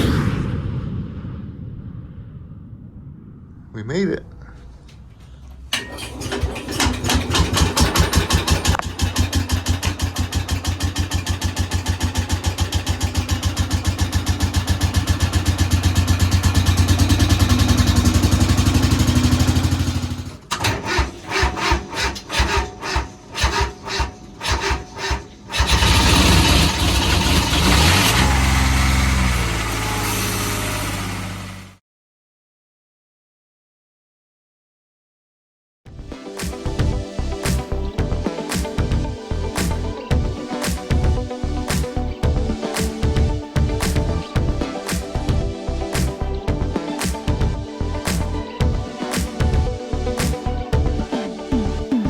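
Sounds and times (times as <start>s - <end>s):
tractor engine chugging: 5.7s - 28.8s.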